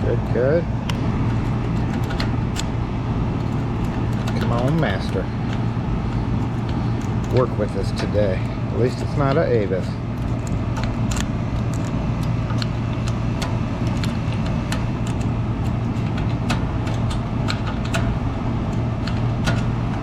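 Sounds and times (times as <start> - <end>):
low engine hum: 0.0 - 20.0
metallic clicks of lock picking: 10.2 - 19.7.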